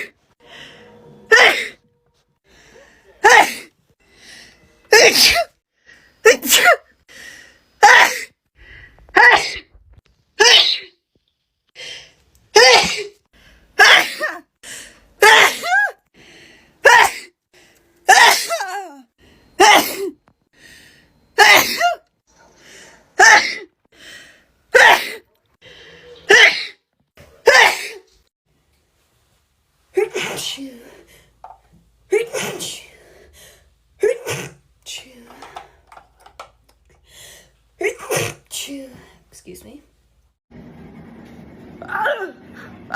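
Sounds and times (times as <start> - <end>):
girl sneezing: 4.9 - 5.6, 6.3 - 6.9, 21.4 - 22.0, 34.0 - 34.6.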